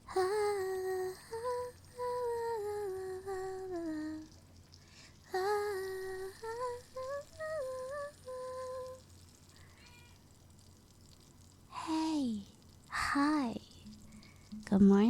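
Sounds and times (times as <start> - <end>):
woman humming a melody: 0.0 - 4.4, 5.3 - 9.0.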